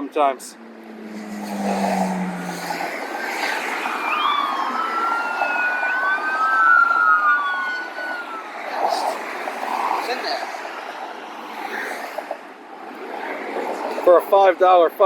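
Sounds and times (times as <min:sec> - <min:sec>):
highway traffic rushing: 0:00.0 - 0:15.0
emergency vehicle siren wailing: 0:00.5 - 0:09.7.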